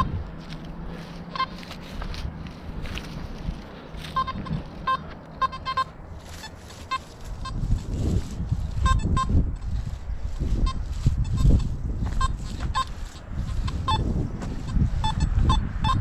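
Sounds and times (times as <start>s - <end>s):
low rumble of handling or wind: 0.0s - 16.0s
metal detector beeps: 1.3s - 1.7s, 4.0s - 8.0s, 8.6s - 16.0s.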